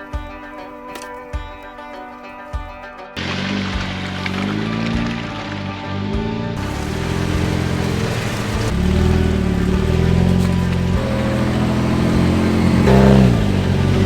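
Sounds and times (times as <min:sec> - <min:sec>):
off-road vehicle engine revving: 0:03.2 - 0:14.0.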